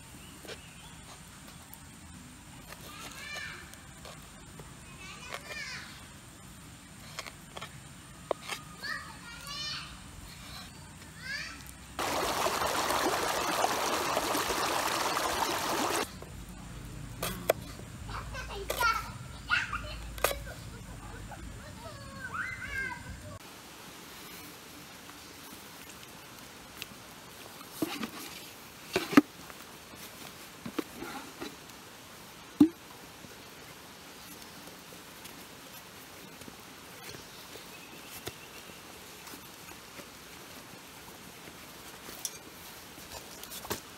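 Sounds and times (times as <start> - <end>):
water pouring: 12.0 - 16.1.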